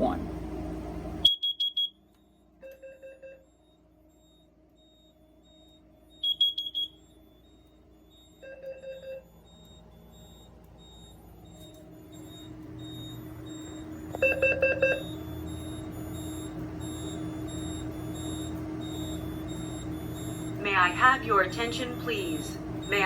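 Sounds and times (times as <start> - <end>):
carbon monoxide alarm beeps: 0.0 - 23.0.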